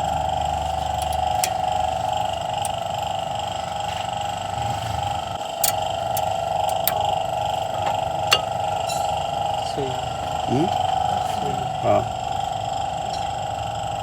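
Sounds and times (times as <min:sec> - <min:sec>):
high wavering whine: 0:05.2 - 0:14.0.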